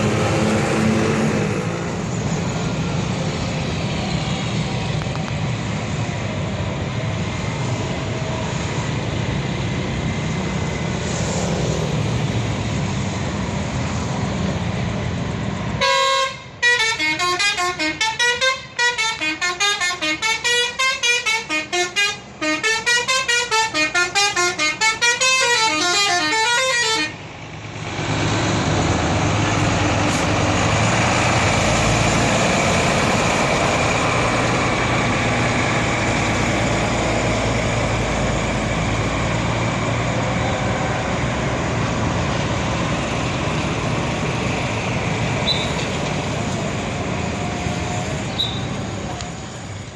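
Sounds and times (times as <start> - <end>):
bus engine: 0.0 - 49.9
traffic noise: 0.0 - 49.9
bus horn playing fast melody: 15.8 - 27.2.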